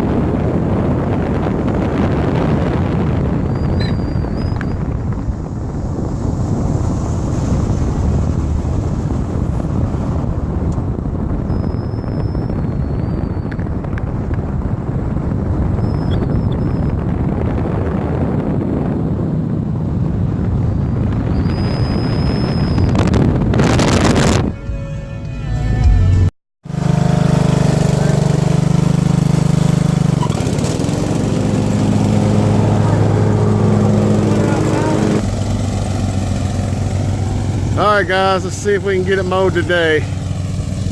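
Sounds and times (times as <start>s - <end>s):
wind on microphone: 0.0s - 24.9s, 26.8s - 40.9s
low rumble: 0.0s - 26.3s
faint high whistles: 3.4s - 4.9s, 11.4s - 13.7s, 15.8s - 16.9s, 21.3s - 23.1s
lawn mower engine running: 26.6s - 40.9s.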